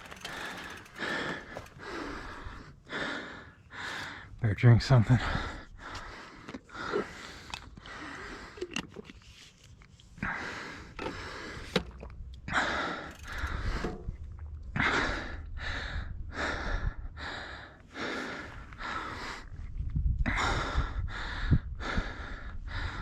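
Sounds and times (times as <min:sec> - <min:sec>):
low steady rumble: 0:12.1 - 0:15.8.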